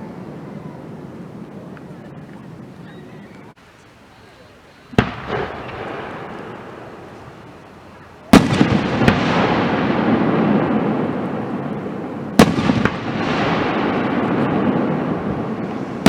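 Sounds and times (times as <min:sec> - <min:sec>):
firework crackling: 0:00.0 - 0:16.0
firework shells bursting: 0:04.9 - 0:16.0.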